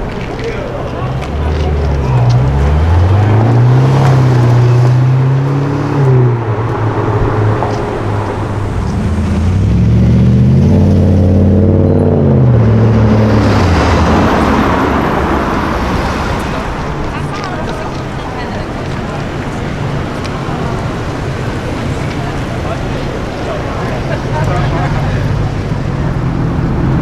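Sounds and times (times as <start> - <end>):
sports car engine revving: 1.1 - 17.1.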